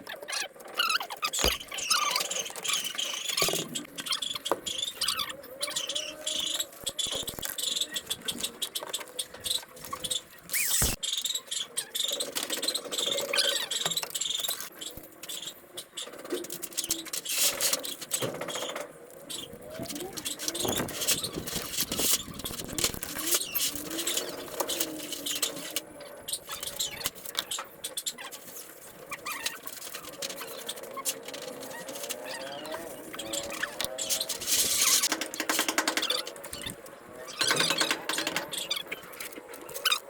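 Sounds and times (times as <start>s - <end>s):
rapid clicks and knocks: 34.2s - 39.4s.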